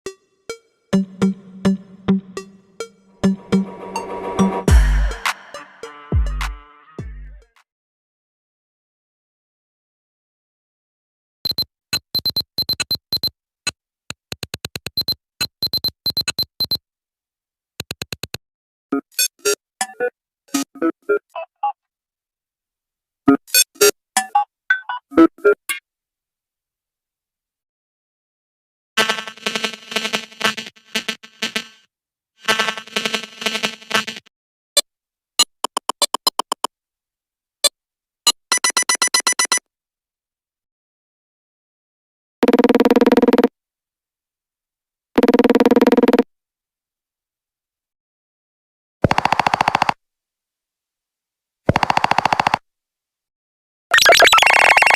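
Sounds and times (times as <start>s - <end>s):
short synth notes: 1.0s - 7.3s
glitchy electronic ringtone clicks: 11.5s - 13.3s, 14.9s - 16.8s, 38.3s - 39.6s, 53.9s - 54.9s
electronic ringtone blips: 53.9s - 54.9s.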